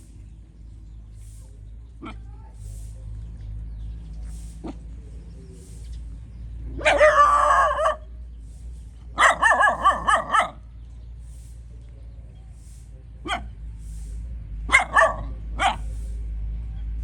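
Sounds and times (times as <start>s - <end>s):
dog barking: 6.7s - 8.1s, 9.2s - 10.7s, 13.2s - 13.6s, 14.7s - 15.9s.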